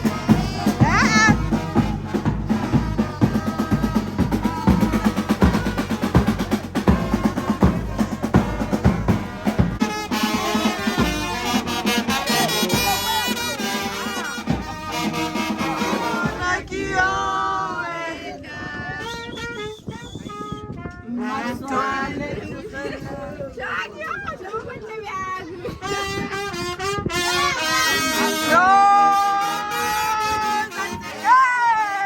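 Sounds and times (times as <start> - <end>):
music with fast drum beat: 0.0 - 16.5
voices: 0.0 - 32.0.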